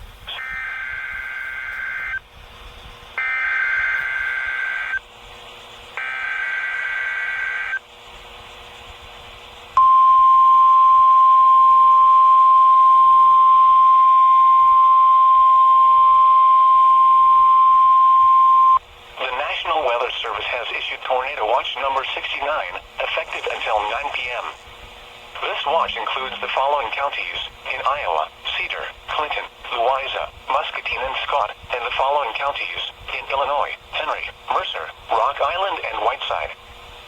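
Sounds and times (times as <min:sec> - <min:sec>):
screechy two-tone data bursts: 0:00.4 - 0:02.2, 0:03.2 - 0:05.0, 0:06.0 - 0:07.8
steady alarm tone: 0:03.2 - 0:05.1, 0:05.9 - 0:07.8, 0:09.8 - 0:18.8.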